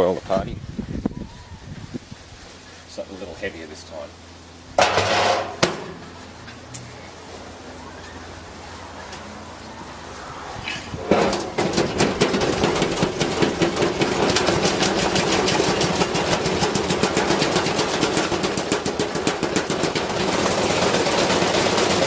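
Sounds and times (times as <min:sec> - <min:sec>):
washing machine running hum: 0:11.0 - 0:22.0.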